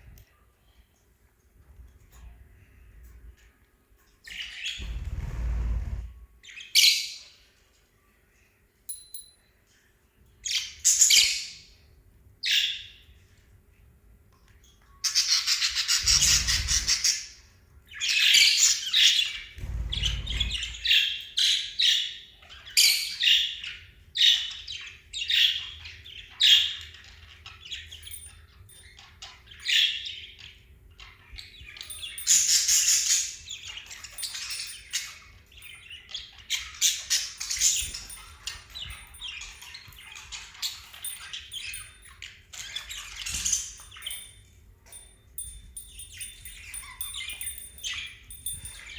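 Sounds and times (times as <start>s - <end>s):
parrots chattering and squawking: 4.5s - 6.1s, 15.1s - 17.3s
low rumbles: 4.8s - 6.4s, 19.6s - 21.1s.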